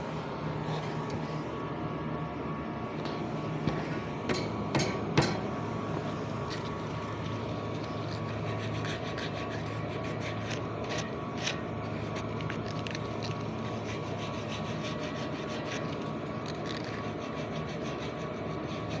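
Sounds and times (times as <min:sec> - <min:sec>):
machinery hum: 0:00.0 - 0:19.0
sandpaper rasping on metal shaft: 0:08.2 - 0:11.0, 0:13.7 - 0:15.9, 0:16.8 - 0:19.0.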